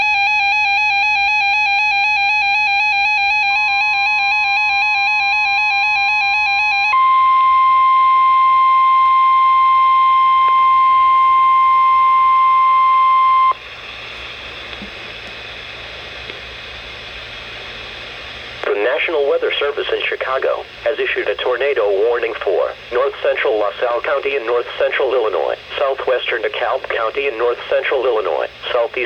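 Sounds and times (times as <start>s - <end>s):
electronic warbling alarm: 0.0s - 13.6s
steady warning alarm tone: 0.0s - 13.6s
radio static hiss: 13.9s - 29.0s.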